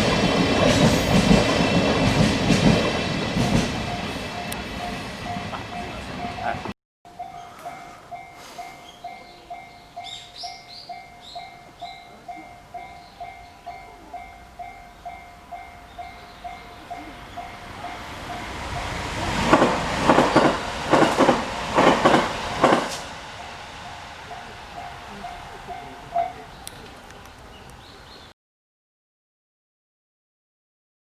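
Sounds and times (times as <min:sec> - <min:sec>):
train wheels clattering over rail joints: 0:00.0 - 0:04.9, 0:18.4 - 0:23.2
level crossing alarm bell: 0:03.8 - 0:19.2, 0:23.3 - 0:26.6.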